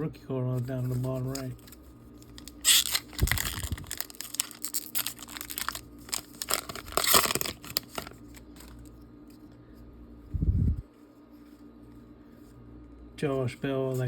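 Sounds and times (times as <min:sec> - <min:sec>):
card pack wrapper crinkling and tearing: 0:00.8 - 0:09.0.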